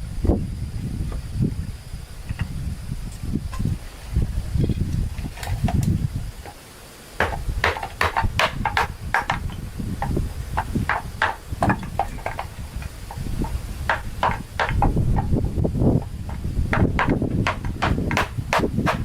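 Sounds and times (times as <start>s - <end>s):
sharp knocks and taps: 7.2s - 15.4s, 16.0s - 19.0s.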